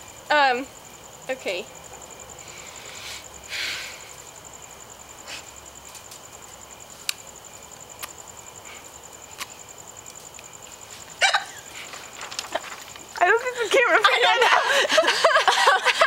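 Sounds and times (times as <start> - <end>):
crickets chirring: 0.0 - 16.0
faint sharp clicks: 7.0 - 7.2, 8.0 - 8.2.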